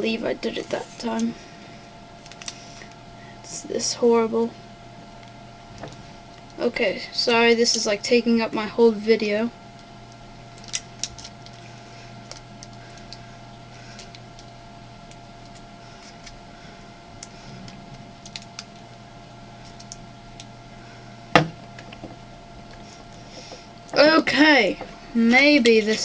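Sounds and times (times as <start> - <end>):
low electrical hum: 0.0 - 26.0
small parts clicking and tapping: 17.2 - 18.9, 19.6 - 20.5.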